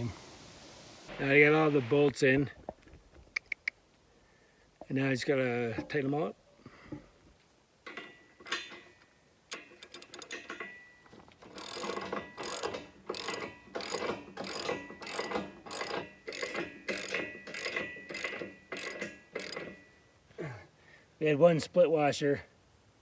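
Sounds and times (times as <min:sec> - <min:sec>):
socket ratchet clicking: 0:09.5 - 0:10.7, 0:11.5 - 0:19.8.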